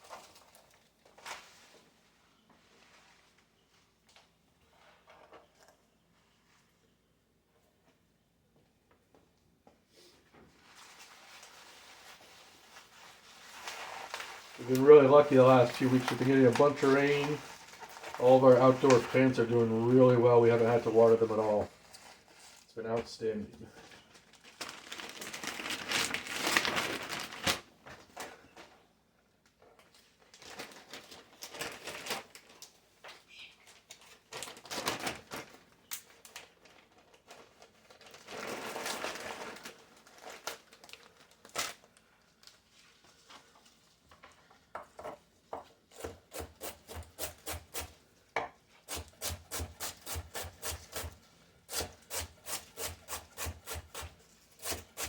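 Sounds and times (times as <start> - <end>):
leaves rustling: 10.9 - 21.6.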